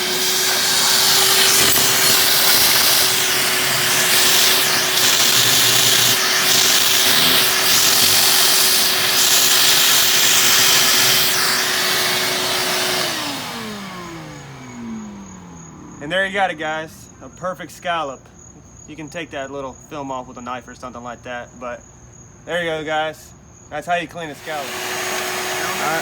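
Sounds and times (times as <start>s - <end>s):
shop vac suction hiss: 0.0s - 14.5s, 24.2s - 26.0s
motor winding down: 0.0s - 15.9s, 24.3s - 26.0s.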